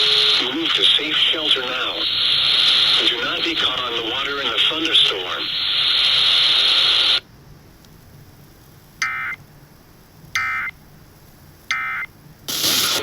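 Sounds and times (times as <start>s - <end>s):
loud hiss: 0.0s - 7.2s, 12.5s - 13.0s.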